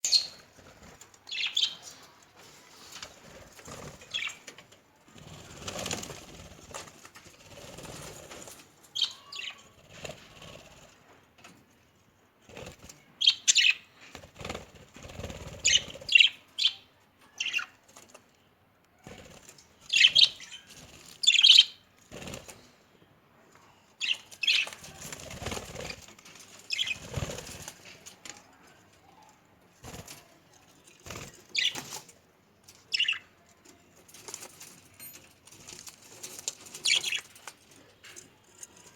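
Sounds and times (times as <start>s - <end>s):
wings flapping: 0.1s - 8.7s, 9.4s - 11.0s, 12.4s - 13.0s, 14.2s - 16.3s, 19.0s - 22.7s, 24.0s - 28.2s, 29.8s - 30.3s.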